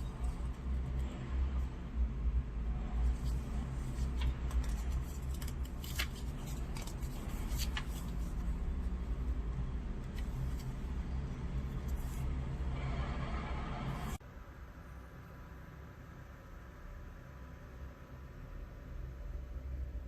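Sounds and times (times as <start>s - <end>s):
steady low hum: 0.0s - 20.0s
rustling: 3.1s - 8.8s.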